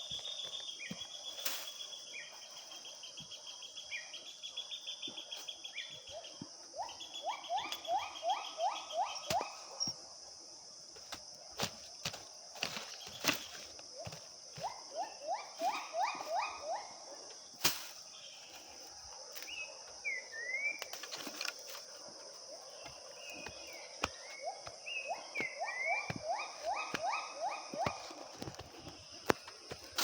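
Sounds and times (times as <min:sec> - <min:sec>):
bird chirps: 0:00.0 - 0:10.0, 0:22.8 - 0:28.5.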